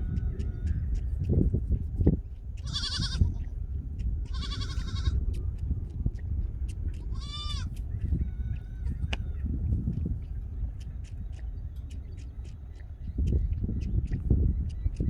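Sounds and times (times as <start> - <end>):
steady low rumble: 0.0 - 15.0
baby goats bleating: 2.6 - 3.5, 4.3 - 5.2, 7.1 - 7.8.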